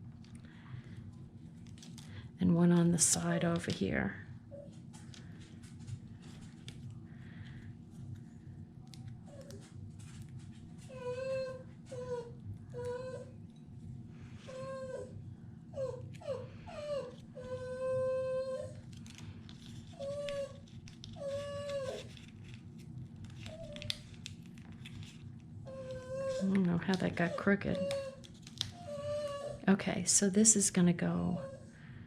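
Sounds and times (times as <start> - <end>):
pet whining peeps: 25.7 - 29.7.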